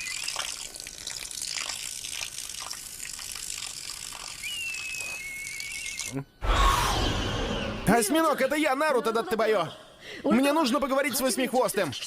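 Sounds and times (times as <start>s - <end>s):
high thin whistle: 4.2s - 7.0s.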